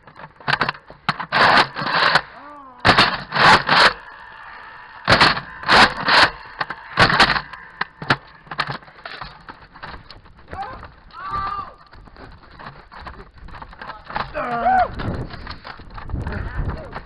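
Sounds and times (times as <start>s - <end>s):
person shouting: 2.3s - 2.9s, 10.6s - 11.8s, 14.3s - 14.9s.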